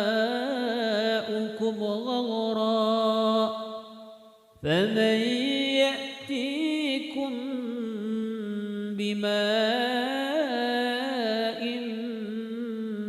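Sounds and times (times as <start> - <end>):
person chanting recitation: 0.0 - 4.0, 4.6 - 13.0.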